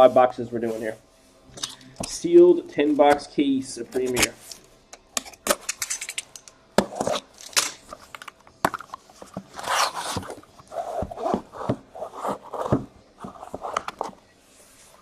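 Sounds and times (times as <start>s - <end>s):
cardboard knocks and scrapes: 9.4s - 14.1s
cardboard tearing: 9.5s - 10.3s.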